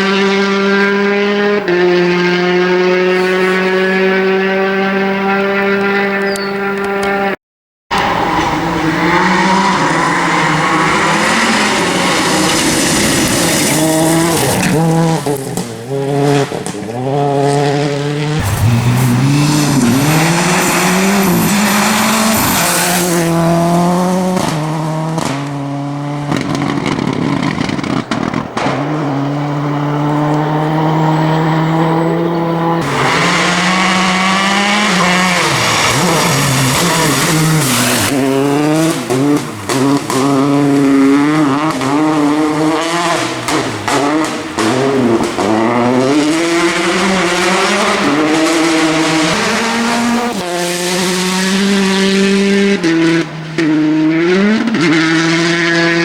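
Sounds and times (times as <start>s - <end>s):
rally car engines revving: 0.0s - 56.0s
sharp cracks: 18.4s - 23.7s.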